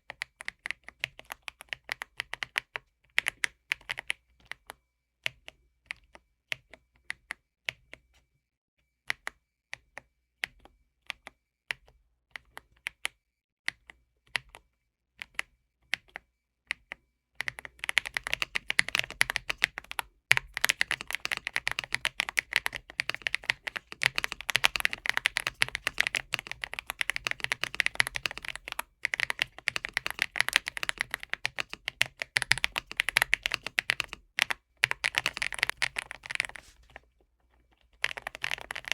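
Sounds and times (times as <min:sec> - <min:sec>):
mechanical keyboard typing: 0:00.1 - 0:04.6, 0:17.4 - 0:37.0, 0:37.8 - 0:38.9.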